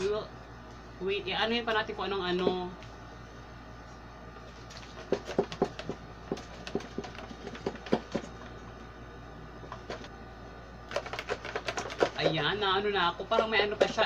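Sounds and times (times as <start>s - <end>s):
packaging being handled: 10.9s - 12.3s.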